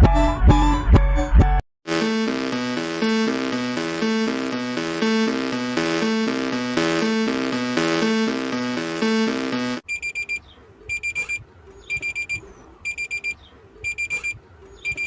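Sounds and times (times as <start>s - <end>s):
synth music: 1.8s - 9.8s
digital alarm clock beeping: 1.9s - 15.0s.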